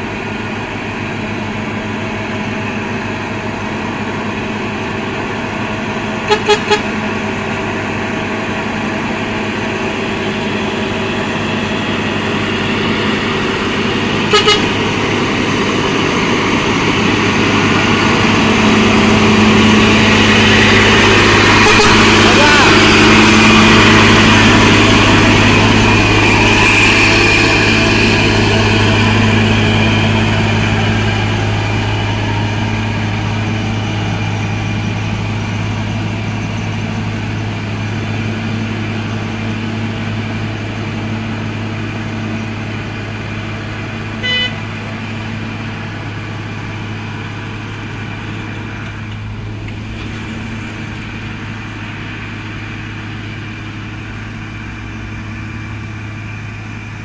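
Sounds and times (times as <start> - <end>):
truck engine running: 0.0 - 57.0
short horn toot: 6.3 - 6.9, 14.3 - 14.8, 21.6 - 22.2, 44.2 - 44.7.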